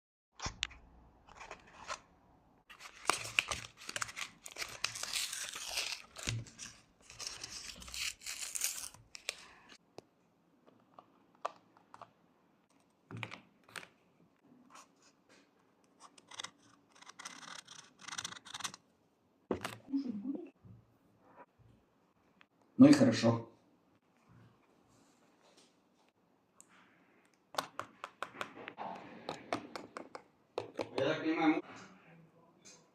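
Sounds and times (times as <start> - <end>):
rustling and tearing: 2.7 - 9.7.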